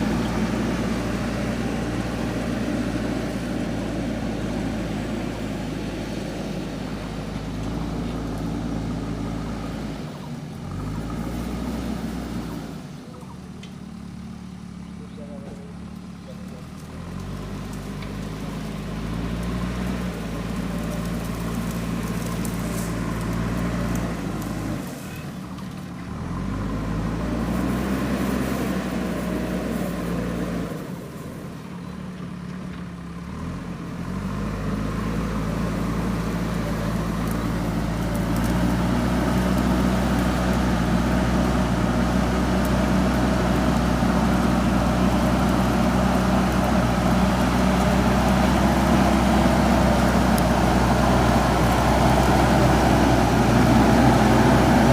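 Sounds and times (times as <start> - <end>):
diesel engine revving: 0.0 - 54.9.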